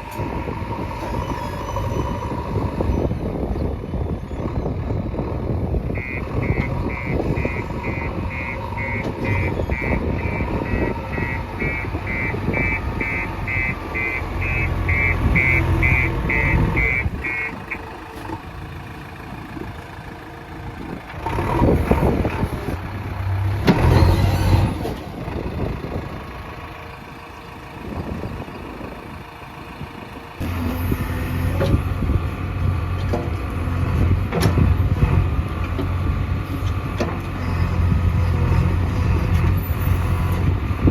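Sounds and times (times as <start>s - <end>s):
backhoe diesel engine running: 0.0s - 40.9s
reversing alarm beeping: 6.0s - 17.8s.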